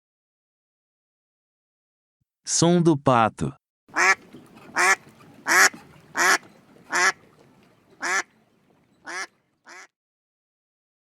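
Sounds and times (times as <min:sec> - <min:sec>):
duck quacking: 0:03.9 - 0:07.2, 0:08.0 - 0:08.3, 0:09.0 - 0:09.9.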